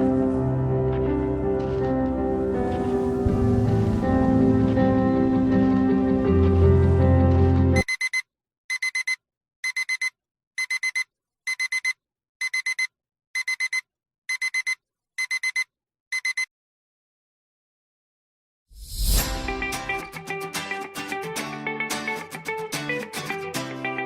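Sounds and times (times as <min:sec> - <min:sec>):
music: 0:00.0 - 0:07.8, 0:18.9 - 0:24.0
digital alarm clock beeping: 0:07.8 - 0:16.5.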